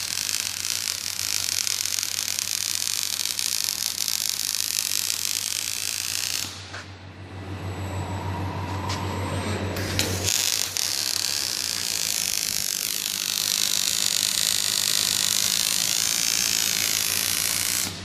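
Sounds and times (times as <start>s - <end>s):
welding arc hissing: 0.0s - 6.7s, 9.8s - 18.0s
low electrical hum: 0.0s - 18.0s.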